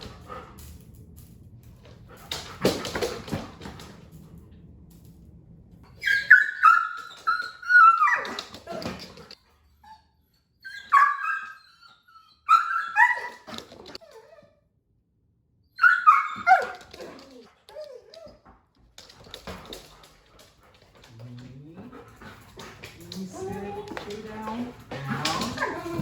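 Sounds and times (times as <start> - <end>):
dog whining and crying: 5.9 - 14.5, 15.8 - 18.5, 23.0 - 26.0.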